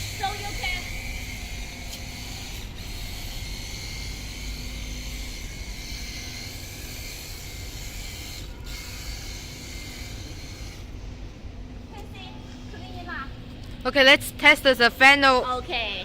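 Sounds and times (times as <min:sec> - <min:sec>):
pump running: 0:00.0 - 0:11.0.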